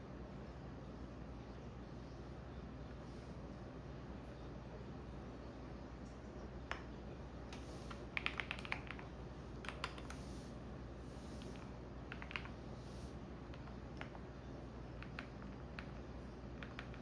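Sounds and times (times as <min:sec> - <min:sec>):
typing on a computer keyboard: 0:07.9 - 0:10.2, 0:12.1 - 0:12.6, 0:14.9 - 0:17.0.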